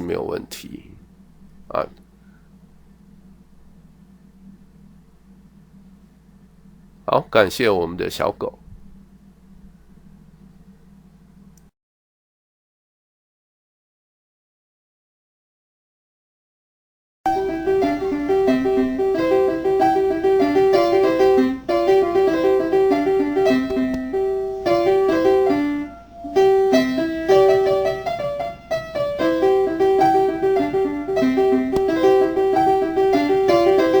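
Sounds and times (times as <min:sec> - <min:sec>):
fast rhythmic piano melody: 0:17.3 - 0:34.0.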